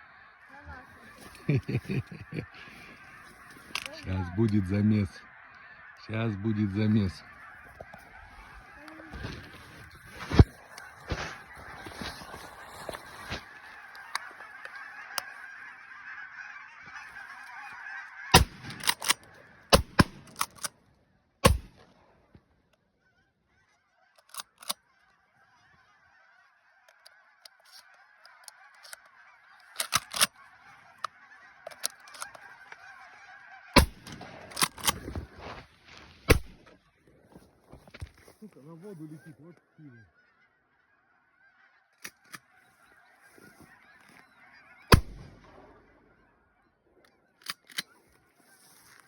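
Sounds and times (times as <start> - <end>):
flock of geese honking: 0.0 - 49.0
shotgun shots: 18.3 - 20.6, 21.4 - 21.9, 33.8 - 35.1, 36.3 - 36.7, 44.9 - 45.8.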